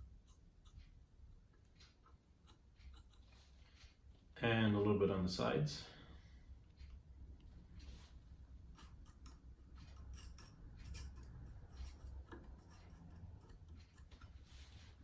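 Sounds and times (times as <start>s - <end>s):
small clicks and rubbing from hands: 0.2s - 4.3s.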